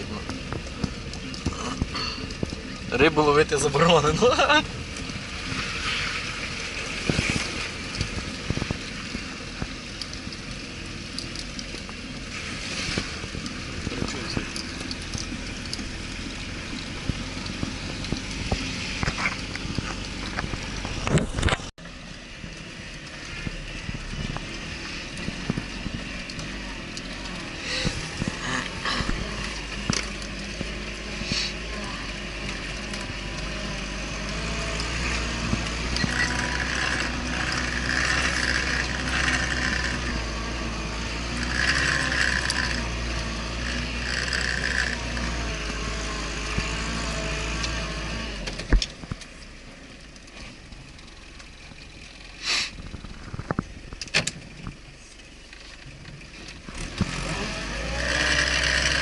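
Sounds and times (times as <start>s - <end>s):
vehicle engine rumbling: 0.0s - 59.0s.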